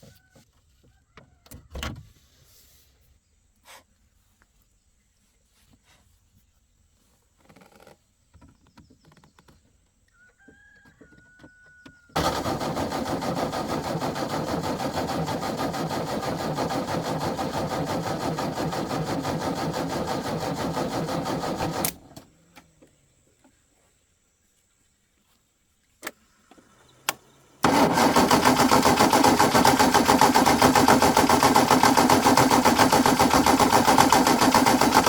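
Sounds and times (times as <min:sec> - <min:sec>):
loud rhythmic machine running: 0:27.6 - 0:35.0.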